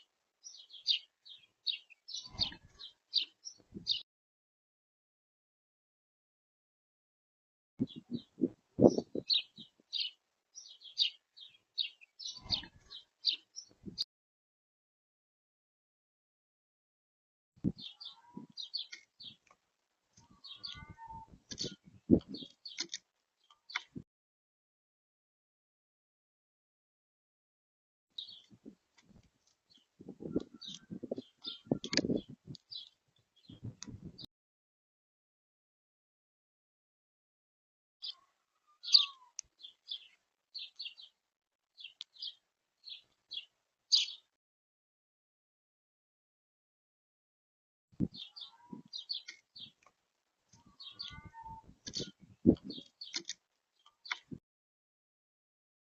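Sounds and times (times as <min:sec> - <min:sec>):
birds chirping: 0:00.4 - 0:04.0, 0:07.8 - 0:14.0, 0:17.7 - 0:19.4, 0:20.2 - 0:24.0, 0:28.2 - 0:28.6, 0:29.7 - 0:34.3, 0:38.8 - 0:41.2, 0:41.8 - 0:44.2, 0:48.0 - 0:49.8, 0:50.6 - 0:54.4.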